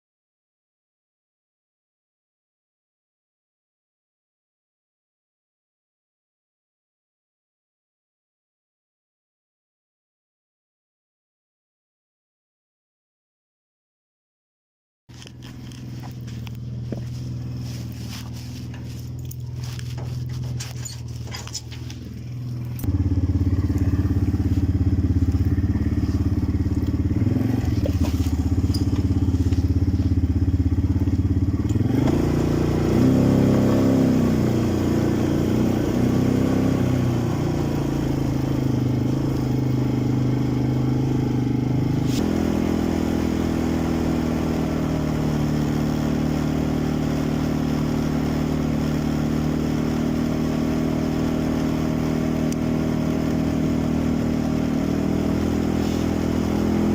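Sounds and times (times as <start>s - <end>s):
quad bike engine droning: 15.1s - 56.9s.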